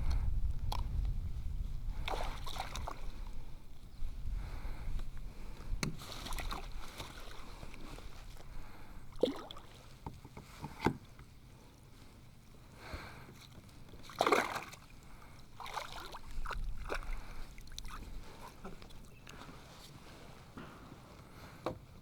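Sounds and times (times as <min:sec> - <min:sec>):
low wind rumble: 0:00.0 - 0:05.8
water splashing: 0:02.0 - 0:03.3, 0:09.1 - 0:10.0, 0:14.0 - 0:15.0, 0:15.6 - 0:18.6.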